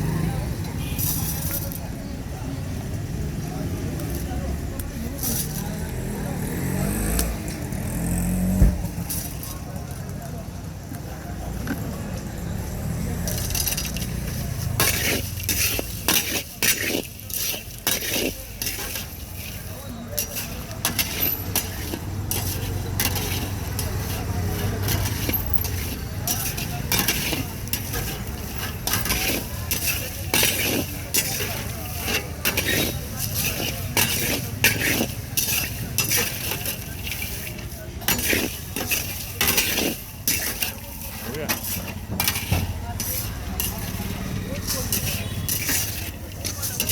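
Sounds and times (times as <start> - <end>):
street traffic rumble: 0.0 - 46.9
metal spoon scraping steel vessel: 13.3 - 46.9.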